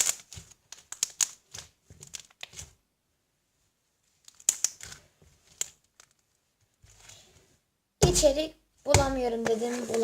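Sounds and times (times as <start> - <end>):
slime crackling and popping: 4.3 - 5.8.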